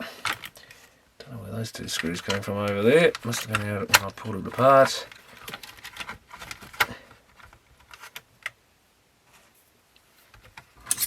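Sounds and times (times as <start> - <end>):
small parts clicking and tapping: 1.8 - 8.6, 10.3 - 11.0.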